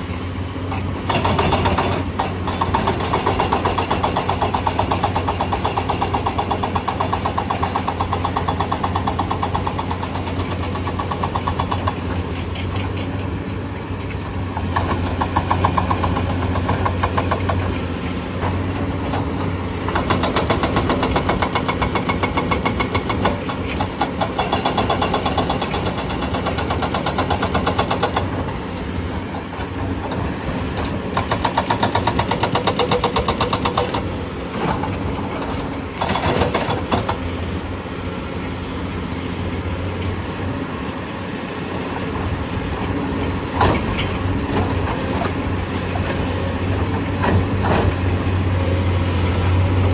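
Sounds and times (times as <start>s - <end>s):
hydraulic breaker hammering rock: 0.7s - 13.4s, 14.2s - 28.6s, 29.3s - 37.3s
diesel engine running: 33.3s - 49.9s.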